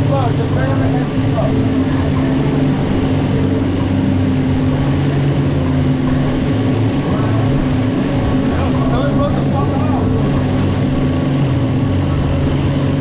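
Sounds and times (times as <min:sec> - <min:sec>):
boat outboard engines droning: 0:00.0 - 0:13.0
water rushing: 0:00.0 - 0:13.0.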